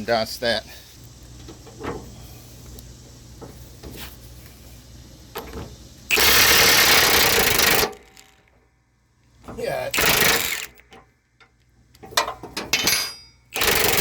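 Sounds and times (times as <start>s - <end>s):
impact wrench hammering: 6.1s - 8.4s, 9.9s - 11.0s, 12.2s - 14.0s.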